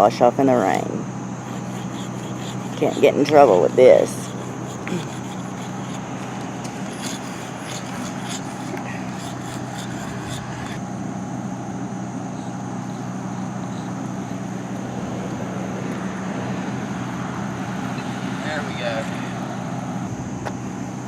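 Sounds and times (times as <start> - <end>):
steady low hum: 0.0 - 21.0
chalk scraping on concrete: 0.6 - 10.8.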